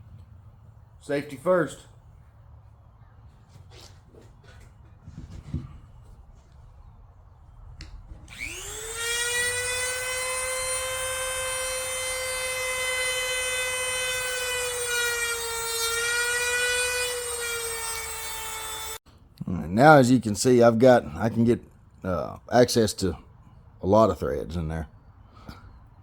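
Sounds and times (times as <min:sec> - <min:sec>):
rotary tool grinding whine: 0:08.2 - 0:19.0.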